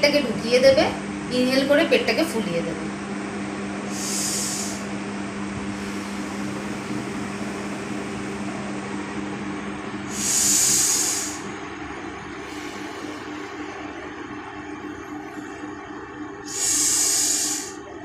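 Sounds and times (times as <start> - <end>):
low steady hum: 0.0 - 18.0
forceful hissing breaths: 3.9 - 5.0, 5.7 - 7.5, 10.1 - 11.6, 16.4 - 17.8.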